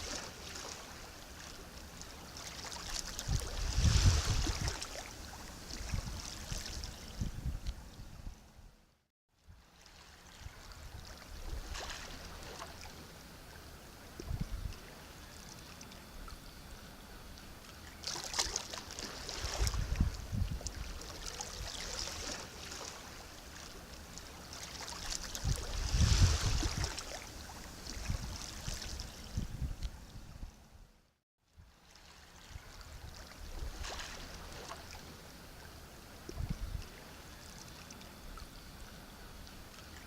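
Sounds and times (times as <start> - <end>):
sea waves breaking: 0.0 - 7.0, 17.9 - 29.2.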